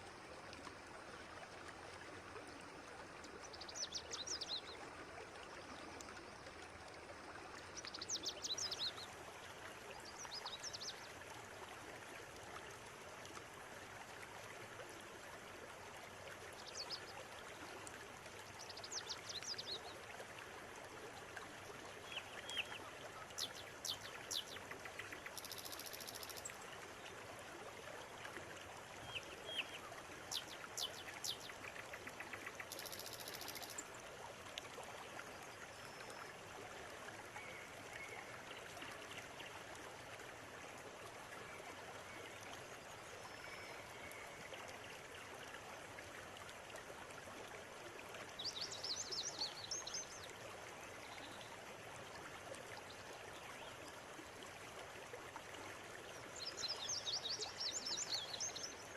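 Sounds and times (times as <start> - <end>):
river flowing: 0.0 - 58.9.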